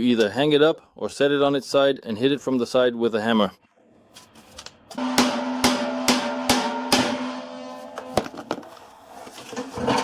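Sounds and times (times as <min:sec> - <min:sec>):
hammer striking steel bolt: 0:05.0 - 0:08.3
metal drum ringing: 0:05.0 - 0:08.3.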